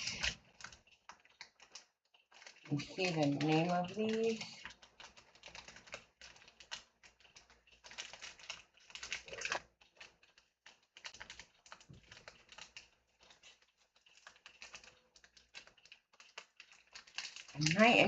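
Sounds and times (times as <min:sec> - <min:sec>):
packaging crinkling: 0:00.0 - 0:18.0.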